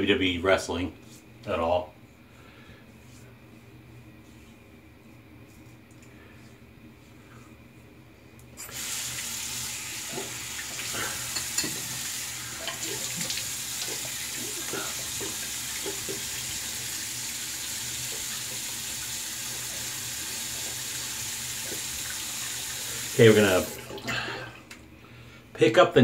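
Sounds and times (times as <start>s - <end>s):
tap running into basin: 9.9s - 17.0s.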